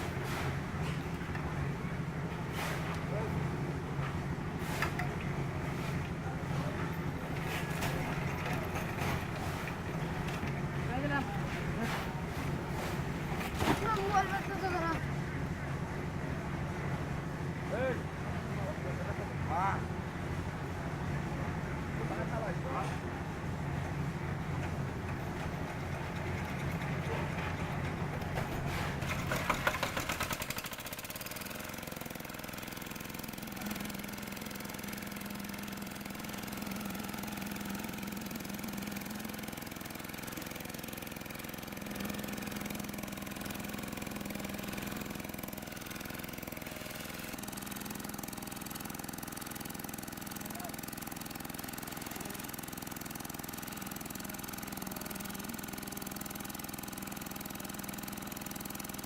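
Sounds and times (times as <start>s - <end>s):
engine running: 0.0s - 59.0s
clatter: 6.6s - 14.9s, 24.6s - 32.6s.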